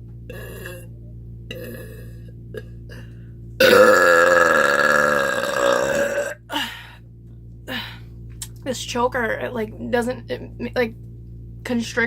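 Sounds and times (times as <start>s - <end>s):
woman burping: 0.3s - 0.9s, 1.5s - 3.0s, 3.6s - 6.6s.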